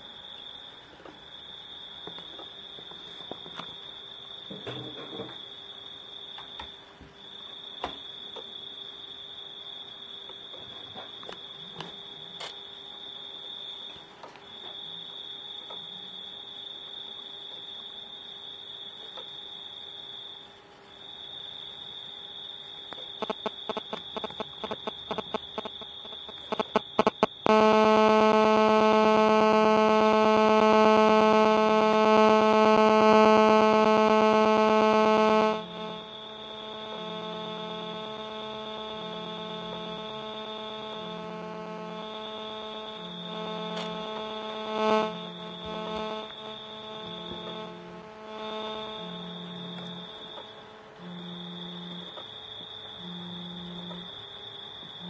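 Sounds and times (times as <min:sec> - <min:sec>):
loud steady electronic buzz: 0:00.0 - 0:06.7, 0:22.4 - 0:55.0
rapid electronic clicks: 0:23.2 - 0:51.2.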